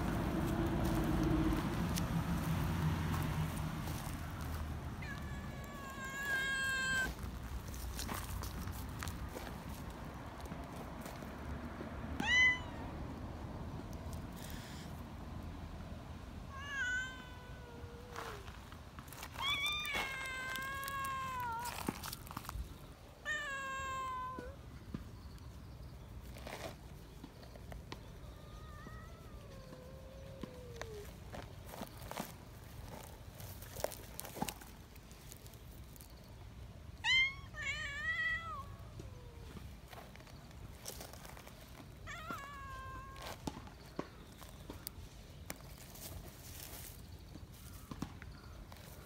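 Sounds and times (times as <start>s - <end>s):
young cat meowing shrilly: 5.0s - 7.2s, 12.2s - 12.8s, 16.5s - 18.5s, 19.3s - 22.2s, 23.2s - 24.6s, 28.4s - 31.1s, 37.0s - 39.6s, 42.0s - 43.5s.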